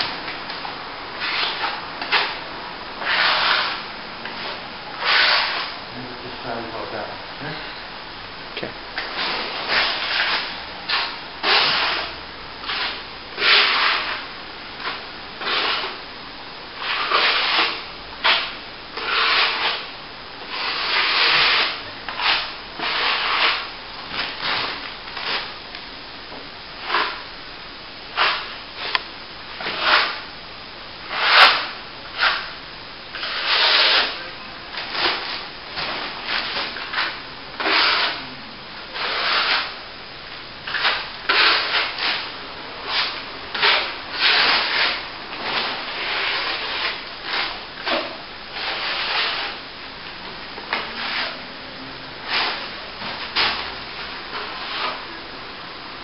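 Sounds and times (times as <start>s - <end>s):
trowel scraping wet plaster: 3.0s - 3.8s, 5.0s - 5.7s, 9.1s - 14.3s, 14.9s - 16.0s, 16.8s - 19.9s, 20.5s - 25.5s, 29.6s - 30.2s, 31.1s - 32.4s, 33.2s - 34.2s, 36.2s - 38.2s, 38.9s - 39.8s, 40.7s - 49.6s, 50.8s - 51.4s.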